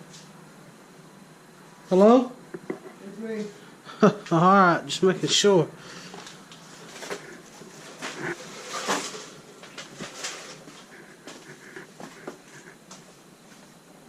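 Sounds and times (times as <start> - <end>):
footsteps crunching over debris: 6.2 - 13.7.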